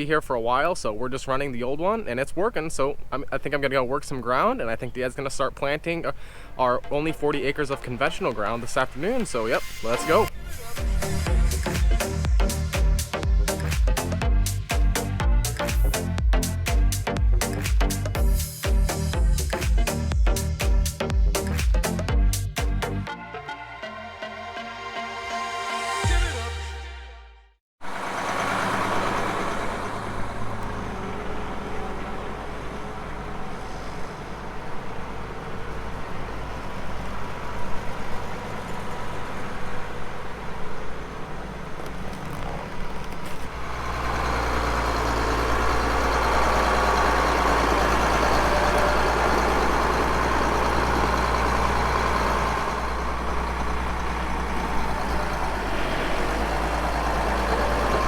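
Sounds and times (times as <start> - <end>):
vehicle engine running: 10.1 - 23.1, 27.8 - 58.0.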